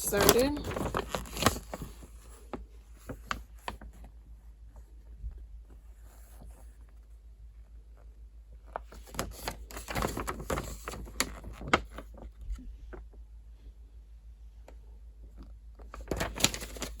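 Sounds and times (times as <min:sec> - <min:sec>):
packaging and papers rustling: 0:00.0 - 0:04.2, 0:08.8 - 0:13.1, 0:15.8 - 0:17.0.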